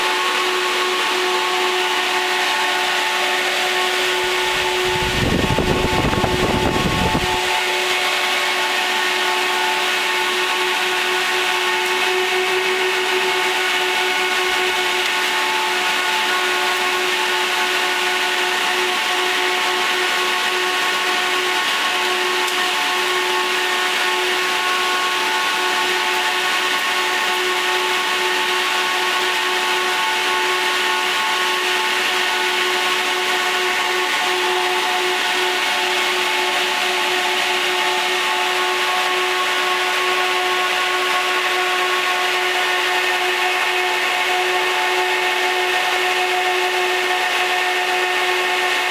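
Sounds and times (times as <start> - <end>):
server cooling fans running: 0.0 - 30.1.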